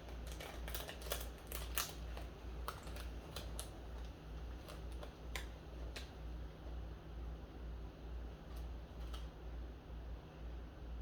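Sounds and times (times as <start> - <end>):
crisp chewing crunches: 0.0 - 6.2.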